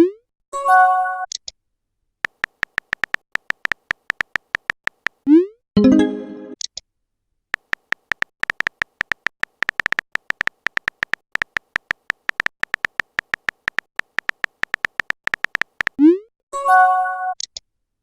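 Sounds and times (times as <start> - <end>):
phone keyboard tapping clicks: 2.2 - 5.2, 7.6 - 16.0.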